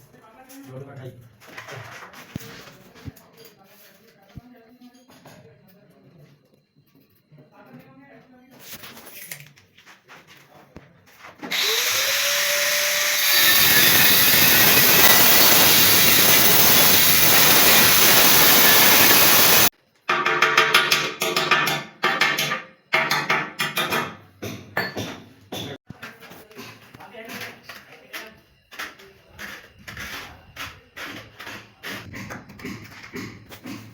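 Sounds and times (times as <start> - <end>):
power tool motor whining: 11.5 - 19.7.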